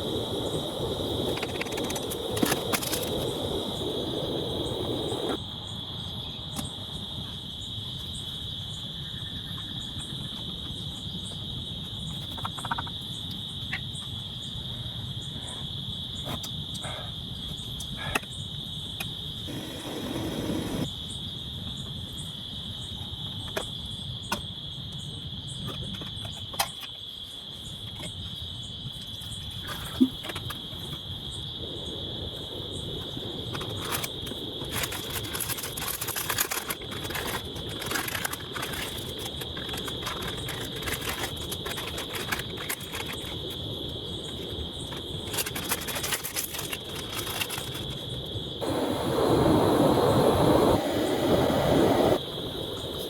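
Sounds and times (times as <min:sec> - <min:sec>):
insects trilling: 0:00.0 - 0:53.0
rushing noise: 0:48.6 - 0:53.0.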